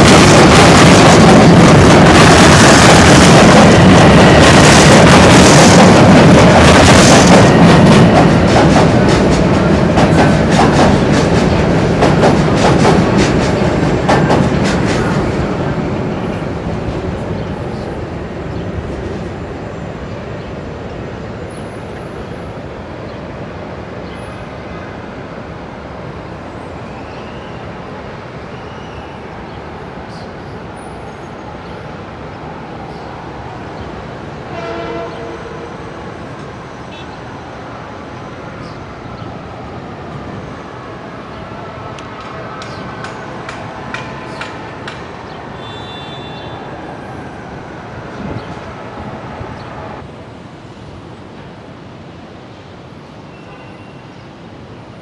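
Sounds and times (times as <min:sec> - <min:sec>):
train wheels clacking: 0:00.0 - 0:18.0, 0:41.8 - 0:46.9
train horn: 0:34.4 - 0:36.3, 0:42.0 - 0:47.3.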